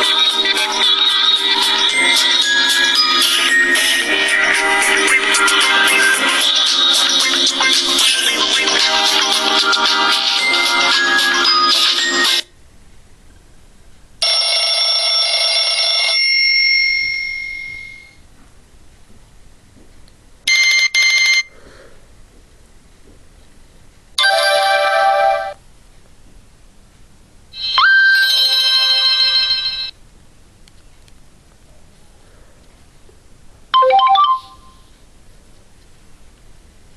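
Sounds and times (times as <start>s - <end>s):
mobile phone ringtones: 0.0s - 12.4s, 20.5s - 21.5s, 24.2s - 25.6s, 27.6s - 30.0s, 33.8s - 34.8s.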